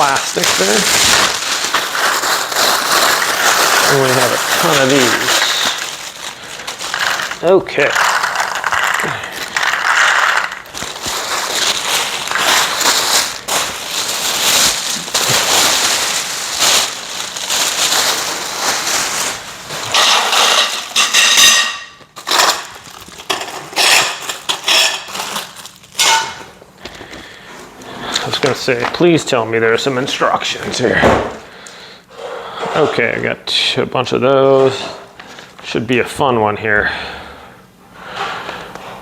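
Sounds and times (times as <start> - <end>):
plastic bags crinkling: 0.0 - 27.4.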